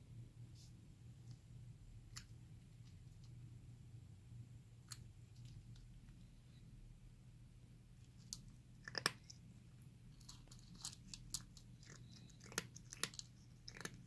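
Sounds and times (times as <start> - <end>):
cat chewing crunchy food: 8.1 - 14.0.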